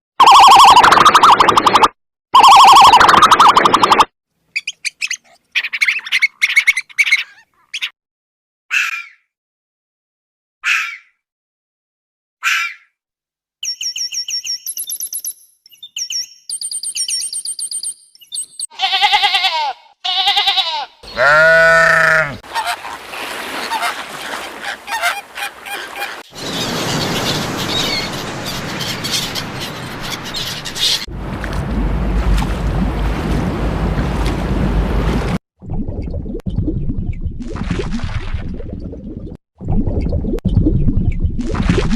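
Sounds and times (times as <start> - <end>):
high bird chirping: 13.6 - 18.7, 26.3 - 31.1
honking bird calls: 21.0 - 31.1.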